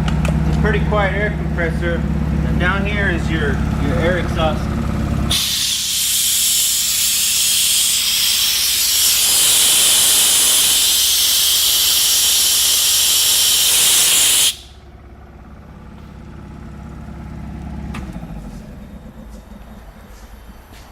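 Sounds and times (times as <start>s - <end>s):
compressor running hum: 0.0s - 20.9s
air compressor exhaust hiss: 2.4s - 17.0s.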